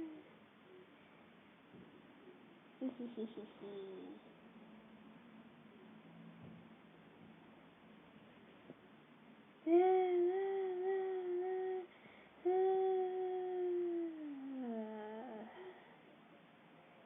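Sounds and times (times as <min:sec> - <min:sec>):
person humming long notes: 0:09.7 - 0:11.9, 0:12.5 - 0:15.7.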